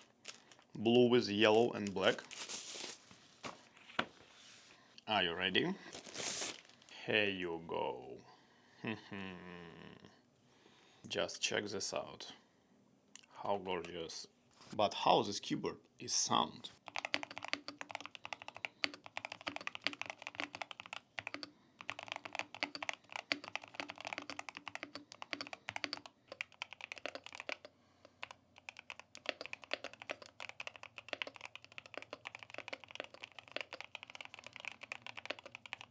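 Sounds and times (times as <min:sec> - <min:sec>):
fast typing on keyboard: 0:16.8 - 0:35.9.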